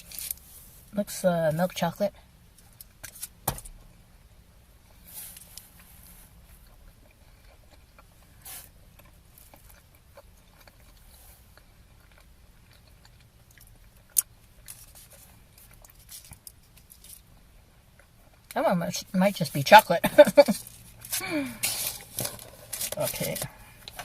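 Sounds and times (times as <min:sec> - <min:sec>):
cellophane wrapper crinkling: 0:20.4 - 0:24.0.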